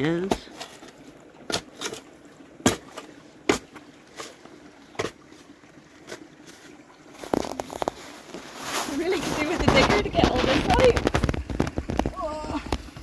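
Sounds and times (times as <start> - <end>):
digging knocks on stony wall: 2.6 - 3.8.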